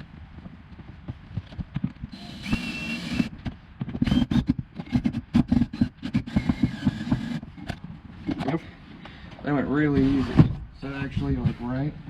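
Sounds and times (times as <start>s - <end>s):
parts and screws clicking: 1.8s - 8.5s
hardware scraping: 9.8s - 11.8s.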